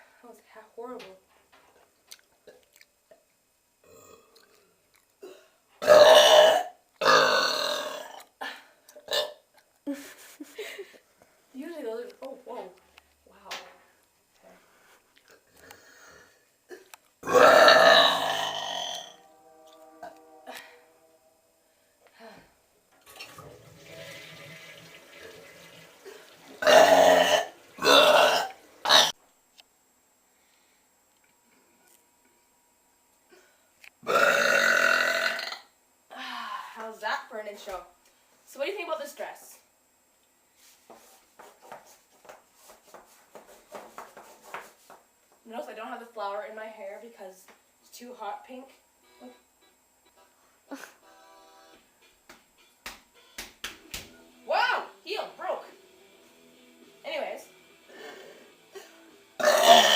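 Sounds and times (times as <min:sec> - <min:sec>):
girl belching: 0:03.8 - 0:08.4, 0:09.0 - 0:09.4, 0:16.7 - 0:20.9, 0:26.6 - 0:29.1, 0:34.0 - 0:35.7, 0:58.0 - 0:59.9.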